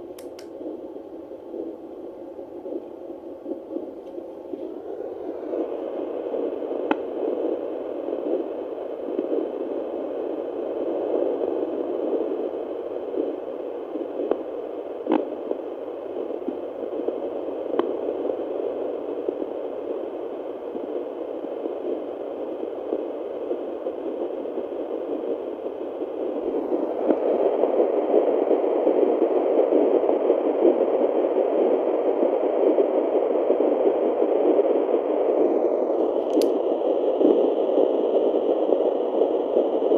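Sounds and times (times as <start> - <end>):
probe clicks: 0.0 - 0.8, 36.0 - 36.6
hissing whooshing static: 0.0 - 39.9.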